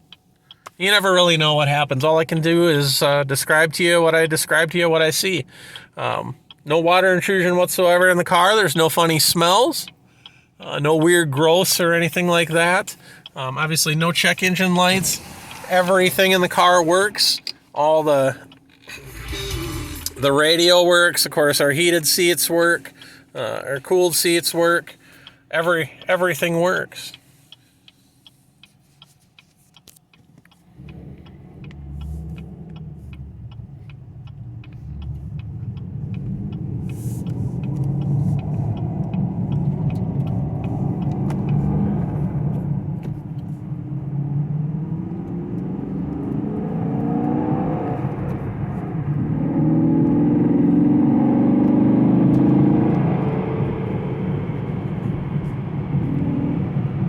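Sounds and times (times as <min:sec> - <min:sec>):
regular ticking: 0:00.0 - 0:57.0
car engine accelerating: 0:11.0 - 0:23.7, 0:30.0 - 0:57.0
tyre and road noise: 0:14.2 - 0:21.6, 0:30.0 - 0:57.0.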